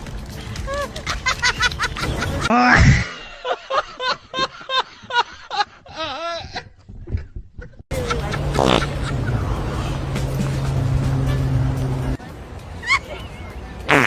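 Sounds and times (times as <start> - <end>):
person laughing: 0.6 - 9.5.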